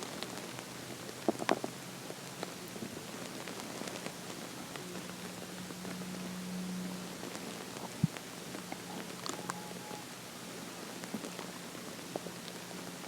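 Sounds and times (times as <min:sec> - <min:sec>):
stomach gurgling pops: 0:01.2 - 0:01.7
stomach growling: 0:01.2 - 0:01.8.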